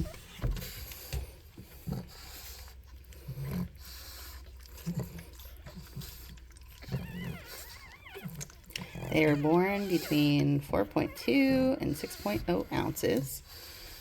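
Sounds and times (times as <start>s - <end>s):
puppies grunting: 0.0s - 14.0s
puppy squealing: 6.8s - 13.0s.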